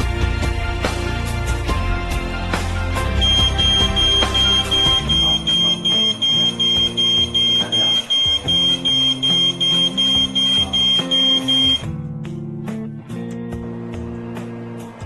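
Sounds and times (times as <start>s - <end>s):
smoke detector beeping: 3.2s - 11.9s.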